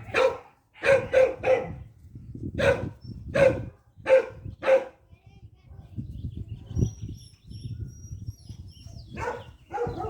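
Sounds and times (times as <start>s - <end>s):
dog barking: 0.0s - 1.8s, 2.6s - 5.0s, 9.1s - 10.0s.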